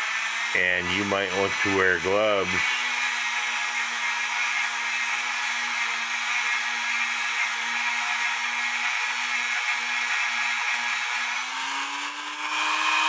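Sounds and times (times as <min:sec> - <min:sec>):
rotary tool wire brush whine: 0:00.0 - 0:13.0.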